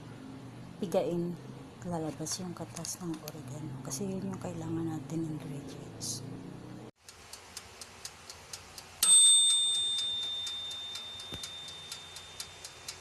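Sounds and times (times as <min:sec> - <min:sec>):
mechanical timer ticking: 0:07.0 - 0:13.0
bell ding: 0:09.0 - 0:12.6.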